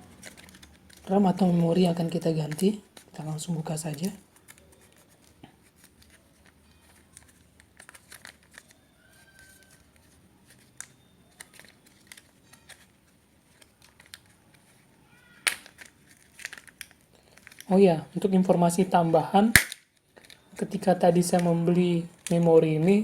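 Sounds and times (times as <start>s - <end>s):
hands clicking and scraping laptop: 0.0s - 1.2s.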